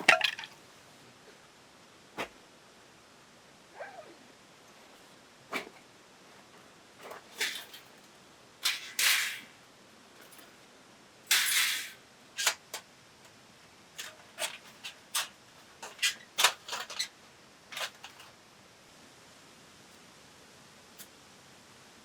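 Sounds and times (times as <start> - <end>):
rustling or scraping noise: 4.8 - 9.6, 14.0 - 18.4.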